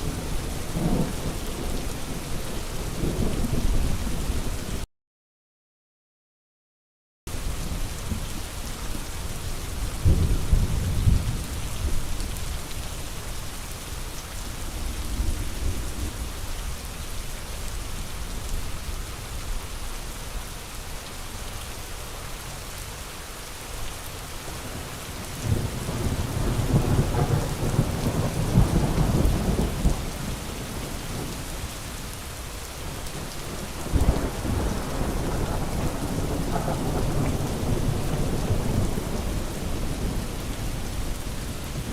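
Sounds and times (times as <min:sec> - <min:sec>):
steady rain falling: 0:00.0 - 0:04.9, 0:07.3 - 0:41.9
thunder rumbling: 0:25.4 - 0:31.4, 0:32.8 - 0:41.9.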